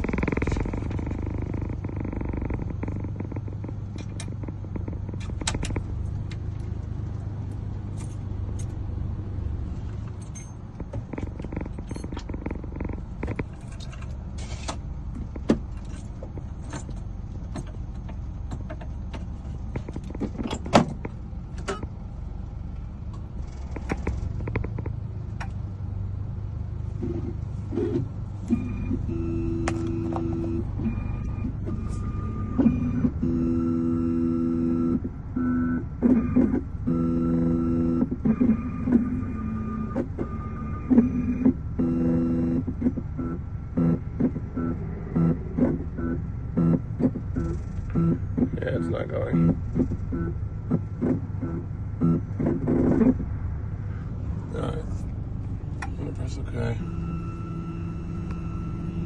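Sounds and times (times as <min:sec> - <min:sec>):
low hum: 0:00.0 - 0:27.8, 0:36.8 - 0:48.6.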